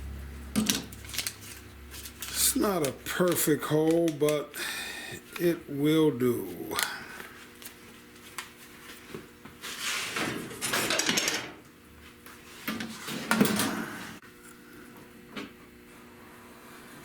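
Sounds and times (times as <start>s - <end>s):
faint steady hum: 0.0s - 9.7s.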